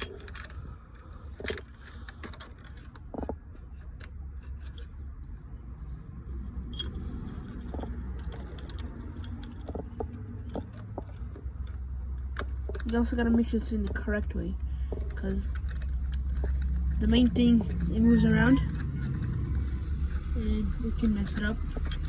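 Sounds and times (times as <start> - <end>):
metal clinks of hand tools: 0.0 - 0.6, 6.7 - 11.4, 21.2 - 22.0.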